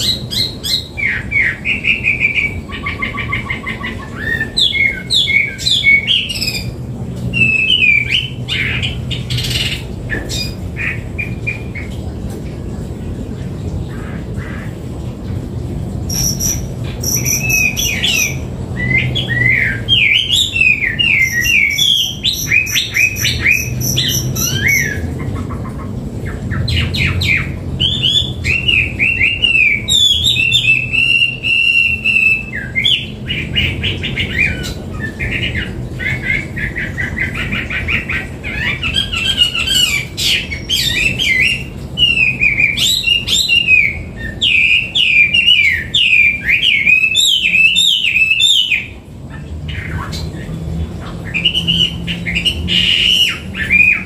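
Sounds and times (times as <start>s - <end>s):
bird singing whistled trills: 0.0s - 10.6s, 16.1s - 25.1s, 26.6s - 33.2s, 38.5s - 48.9s.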